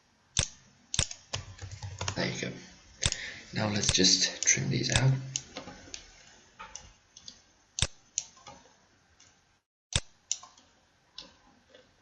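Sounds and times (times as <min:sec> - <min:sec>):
computer mouse clicking: 0:09.2 - 0:11.9.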